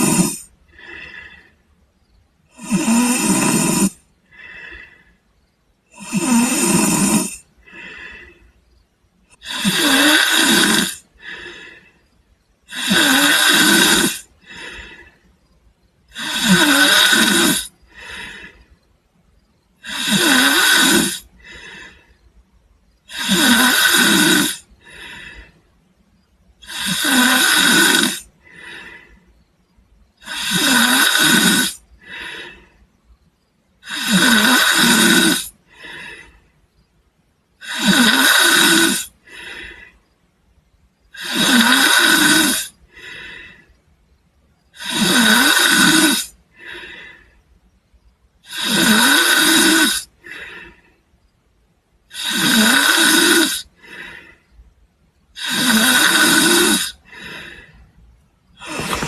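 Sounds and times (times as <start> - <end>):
person snoring: 0.0 - 1.5, 2.5 - 5.0, 5.9 - 8.4, 9.3 - 11.9, 12.7 - 15.1, 16.1 - 18.6, 19.8 - 22.0, 23.1 - 25.4, 26.6 - 29.1, 30.2 - 32.6, 33.8 - 36.3, 37.6 - 39.8, 41.1 - 43.5, 44.8 - 47.2, 48.4 - 50.7, 52.1 - 54.4, 55.4 - 57.6, 58.6 - 59.0.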